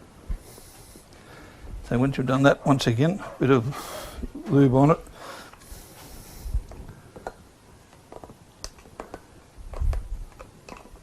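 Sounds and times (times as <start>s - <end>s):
hands clicking and tapping: 7.1s - 10.9s.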